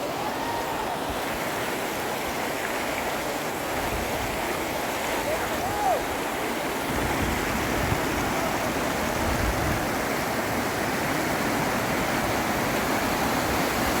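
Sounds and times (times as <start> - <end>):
river rushing: 0.0 - 14.0.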